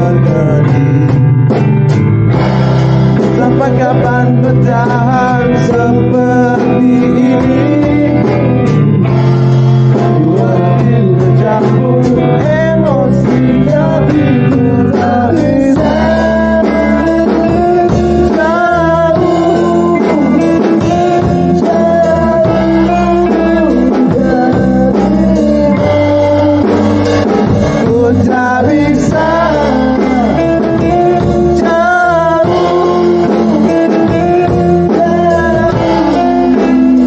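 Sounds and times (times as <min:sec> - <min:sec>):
person singing: 0:00.0 - 0:01.8, 0:03.1 - 0:37.0
bass guitar: 0:00.0 - 0:37.0
drums: 0:00.0 - 0:37.0
electric guitar: 0:00.0 - 0:37.0.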